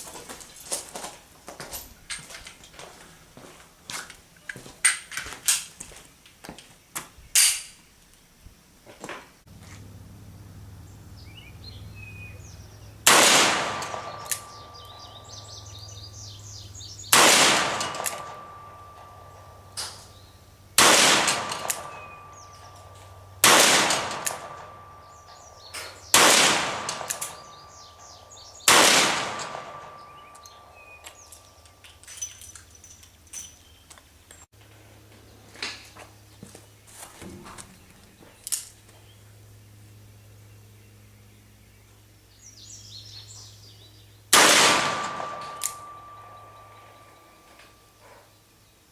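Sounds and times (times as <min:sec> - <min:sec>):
birds chirping: 0:09.6 - 0:34.5, 0:35.1 - 0:44.3, 0:44.9 - 0:48.9
gunshots with echo: 0:13.0 - 0:15.4, 0:17.0 - 0:20.0, 0:20.8 - 0:25.3, 0:26.1 - 0:30.8, 0:44.4 - 0:47.0.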